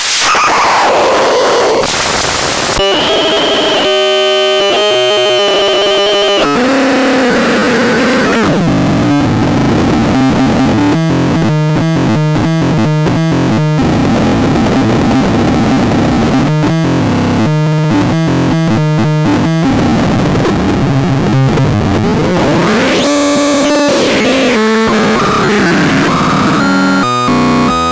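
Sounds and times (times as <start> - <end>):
synthesizer buzzing tones: 2.7 - 27.9
synthesizer pitch sweep: 2.8 - 9.3, 21.2 - 27.9
synthesizer stepped note runs: 2.8 - 27.9.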